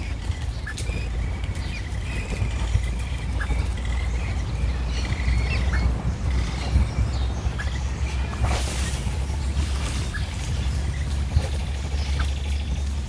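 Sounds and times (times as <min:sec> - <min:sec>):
capybaras whistling chirps: 0:00.0 - 0:13.0
steady low rumble: 0:00.0 - 0:13.0.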